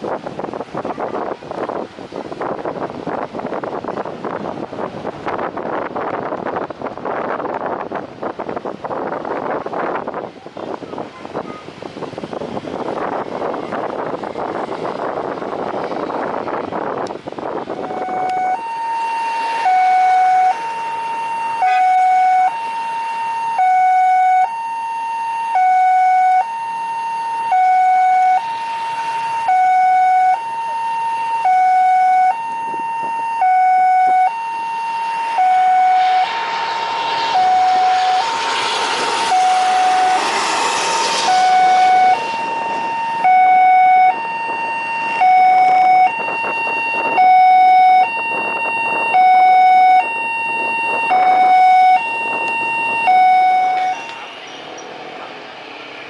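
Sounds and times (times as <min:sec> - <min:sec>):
broad rushing noise: 0:00.0 - 0:24.3, 0:32.4 - 0:56.0
two-tone hi-lo siren: 0:16.3 - 0:54.5.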